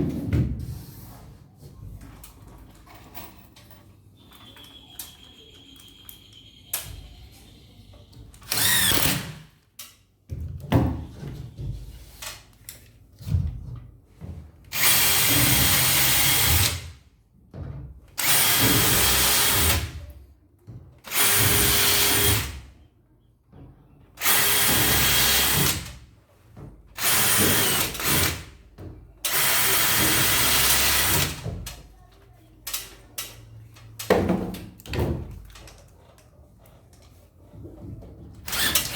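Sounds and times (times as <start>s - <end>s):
power drill driving screws: 8.4s - 9.4s, 14.7s - 16.8s, 18.2s - 19.9s, 21.1s - 22.6s, 24.2s - 25.9s, 27.0s - 28.4s, 29.3s - 31.4s, 38.5s - 38.9s.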